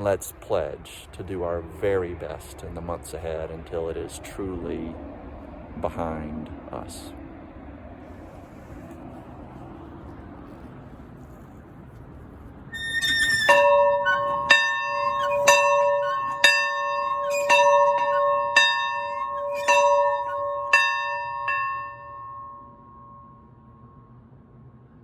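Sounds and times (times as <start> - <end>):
church bell ringing: 13.4 - 24.1.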